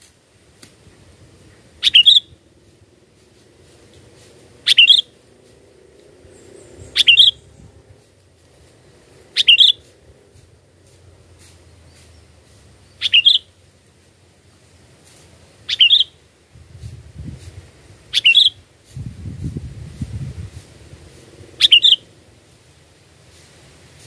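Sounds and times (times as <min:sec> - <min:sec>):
bird giving sharp calls: 0:01.8 - 0:02.4, 0:04.6 - 0:05.2, 0:06.3 - 0:07.6, 0:09.3 - 0:09.9, 0:12.9 - 0:13.6, 0:15.6 - 0:16.2, 0:18.1 - 0:18.6, 0:21.5 - 0:22.1
low rumble: 0:02.4 - 0:11.4.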